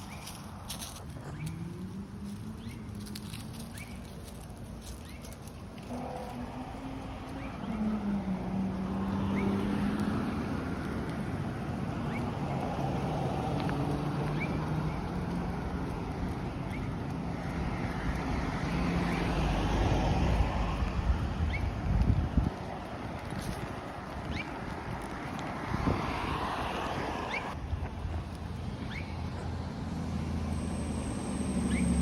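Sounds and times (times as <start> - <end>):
wind rumbling on microphone: 0.0 - 29.8
outdoor noise: 0.0 - 32.0.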